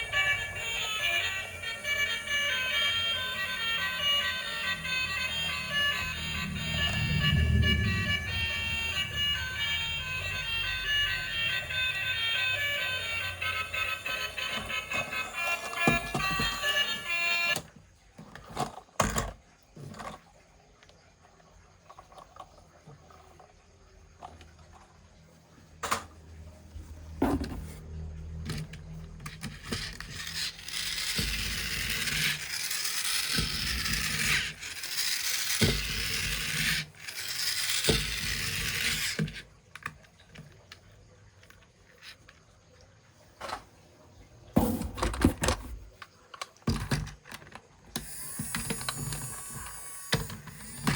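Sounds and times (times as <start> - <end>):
scraping noise: 4.7 - 11.8
plastic toys clicking and knocking: 10.4 - 17.6, 18.3 - 20.2, 28.4 - 42.4, 44.6 - 50.9.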